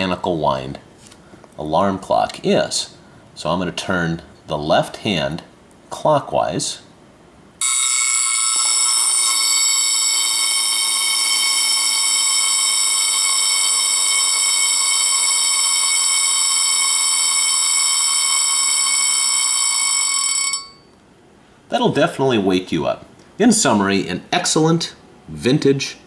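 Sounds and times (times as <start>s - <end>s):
alarm clock bell ringing: 7.6s - 20.9s.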